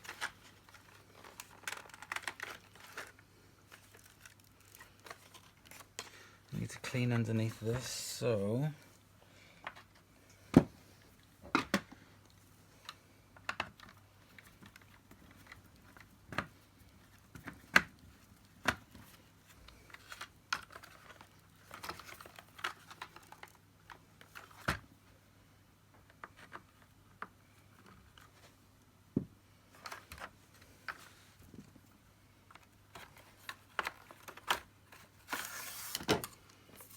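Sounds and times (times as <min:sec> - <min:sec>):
plastic parts clicking and knocking: 0:00.0 - 0:06.1, 0:12.8 - 0:18.0, 0:18.6 - 0:24.8, 0:32.5 - 0:35.2.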